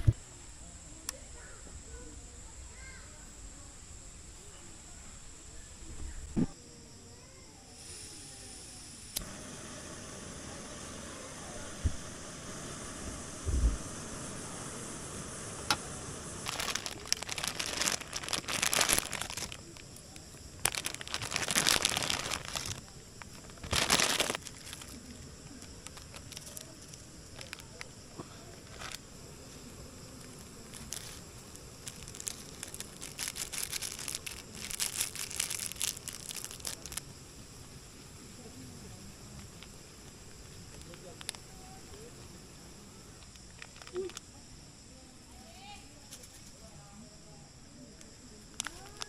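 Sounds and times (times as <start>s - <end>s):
crinkly material rustling: 16.4s - 29.6s, 30.2s - 37.0s, 40.7s - 42.1s, 43.2s - 44.2s, 48.5s - 49.0s.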